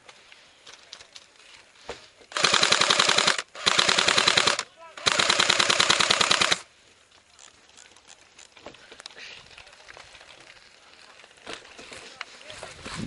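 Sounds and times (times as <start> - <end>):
airsoft gun full-auto bursts: 2.3 - 6.7.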